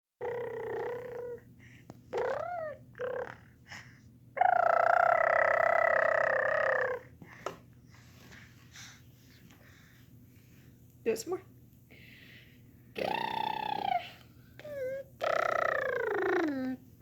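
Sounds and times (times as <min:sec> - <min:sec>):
baby buzzing lips: 0:00.2 - 0:01.5, 0:02.1 - 0:03.8, 0:04.4 - 0:07.1, 0:13.0 - 0:16.8.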